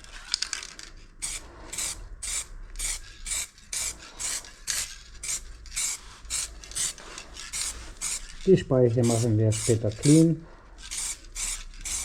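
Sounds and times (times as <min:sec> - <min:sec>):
sandpaper rubbing on metal rim: 0:05.2 - 0:12.0.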